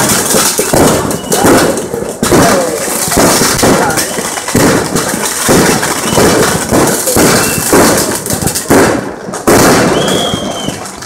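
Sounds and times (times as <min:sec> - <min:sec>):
fireworks bangs and crackles: 0:00.0 - 0:11.0
high firework whistle: 0:00.6 - 0:01.7, 0:05.9 - 0:07.9, 0:09.7 - 0:11.0.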